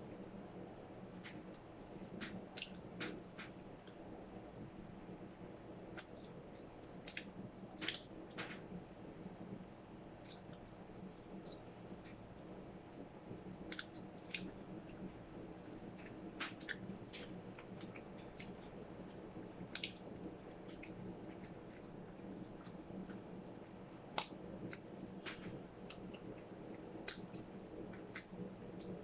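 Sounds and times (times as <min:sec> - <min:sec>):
faint steady hum: 0:00.0 - 0:29.0
chewing mouth sounds: 0:16.5 - 0:18.6.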